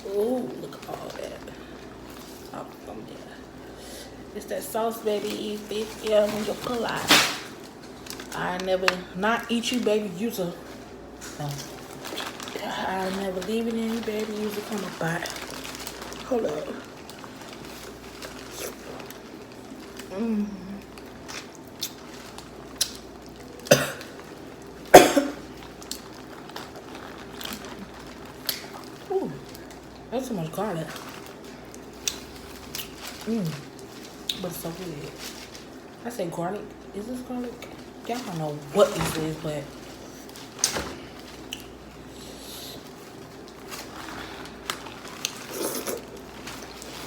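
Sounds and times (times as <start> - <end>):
person coughing: 23.7 - 24.1, 24.9 - 25.4
chewing food: 31.0 - 34.5, 43.0 - 47.0.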